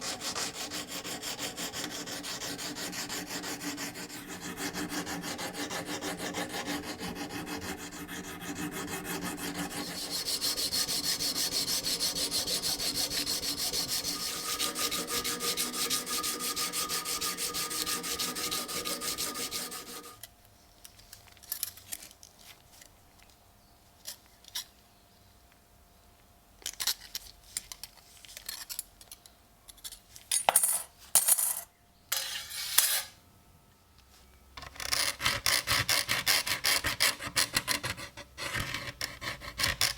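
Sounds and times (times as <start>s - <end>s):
hand file scraping: 0.0s - 20.2s.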